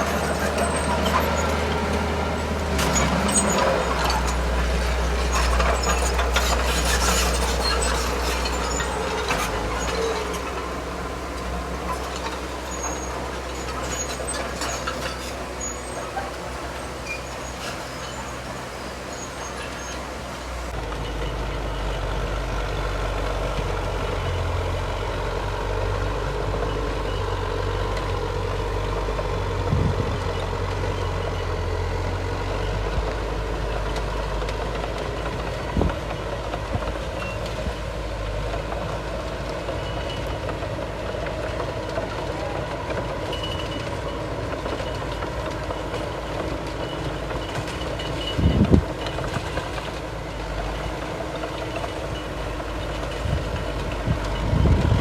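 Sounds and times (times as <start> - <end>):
metal clanking and rattling: 0.0 - 20.7
heavy diesel machinery engine: 0.0 - 55.0.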